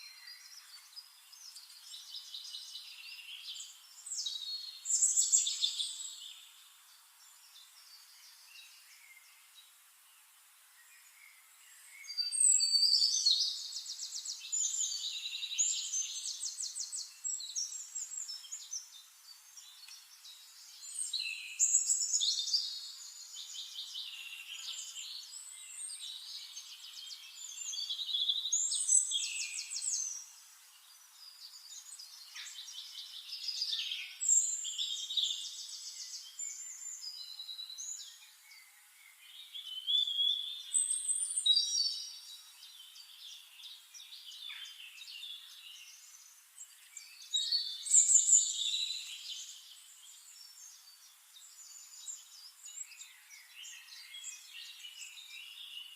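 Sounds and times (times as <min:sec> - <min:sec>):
songbirds trilling and chirping: 0:00.0 - 0:55.9.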